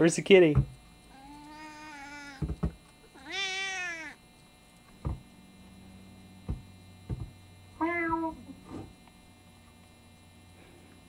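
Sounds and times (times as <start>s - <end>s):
steady electrical hum: 0.0s - 11.0s
person imitating cat meowing: 1.1s - 2.5s, 3.2s - 4.2s, 7.8s - 8.4s
short thumps: 5.0s - 5.3s, 6.4s - 7.4s.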